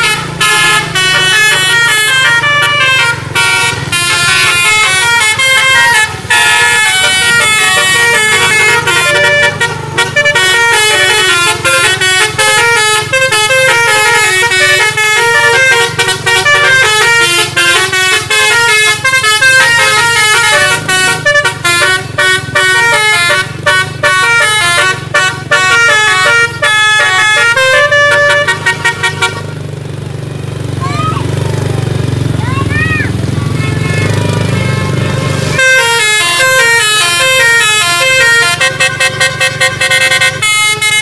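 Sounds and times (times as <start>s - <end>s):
bus musical horn melody: 0.0s - 29.8s, 33.3s - 41.0s.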